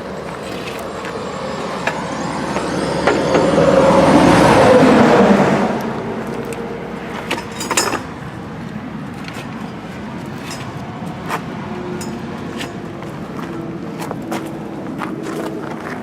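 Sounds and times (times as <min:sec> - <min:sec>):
metal clinks and knocks: 0:07.2 - 0:08.4, 0:10.2 - 0:12.9.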